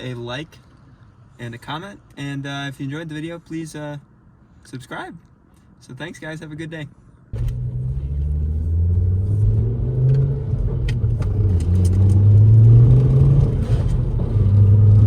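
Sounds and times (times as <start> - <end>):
car engine accelerating: 7.4 - 15.0.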